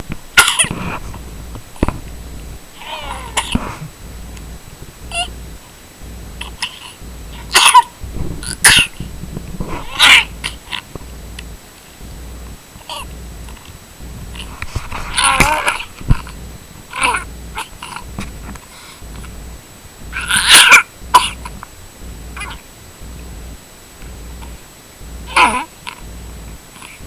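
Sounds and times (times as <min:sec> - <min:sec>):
cat coughing: 0:00.4 - 0:00.8, 0:02.8 - 0:03.9, 0:06.4 - 0:09.0, 0:20.2 - 0:21.5.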